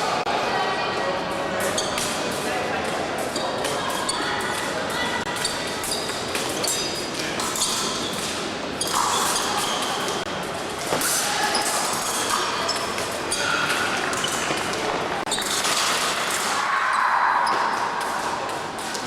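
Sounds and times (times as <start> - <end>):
fencing blades clinking: 5.3 - 16.6.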